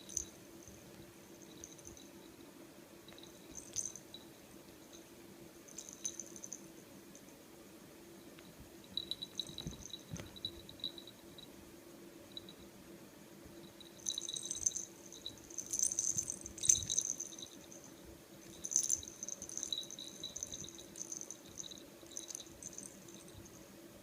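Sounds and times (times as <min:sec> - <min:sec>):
toy ball rattling and clicking: 0:00.0 - 0:00.4, 0:03.1 - 0:04.1, 0:05.7 - 0:06.6, 0:14.0 - 0:17.8, 0:18.5 - 0:23.3
faint steady hum: 0:00.0 - 0:24.0.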